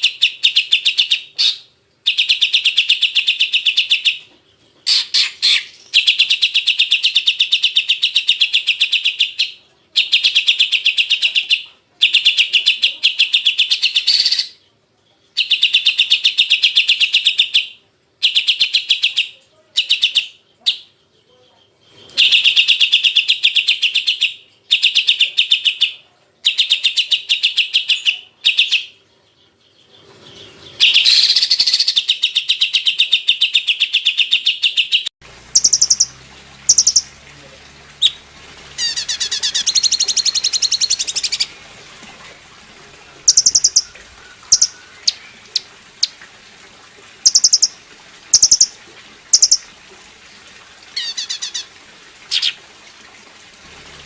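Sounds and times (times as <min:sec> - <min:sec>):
bird chattering trills: 0:35.6 - 0:36.1, 0:36.7 - 0:37.2, 0:43.2 - 0:46.2, 0:47.2 - 0:49.7.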